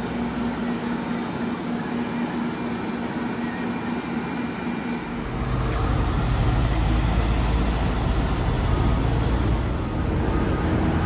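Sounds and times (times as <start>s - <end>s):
deep low rumble: 5.0s - 11.0s
road traffic noise: 5.0s - 11.0s.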